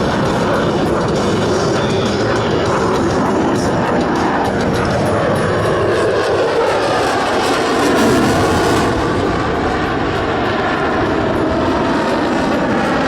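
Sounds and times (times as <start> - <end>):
jet engine roar: 0.0 - 13.0.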